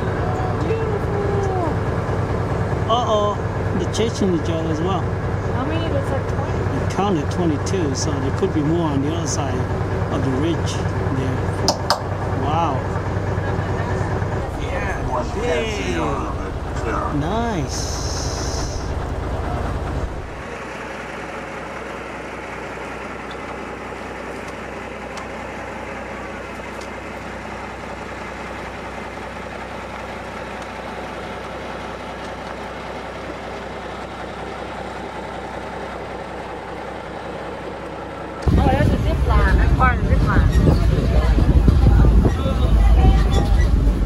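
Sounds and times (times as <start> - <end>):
loud low rumble: 0.0 - 21.8, 34.4 - 44.0
bus engine running: 0.0 - 44.0.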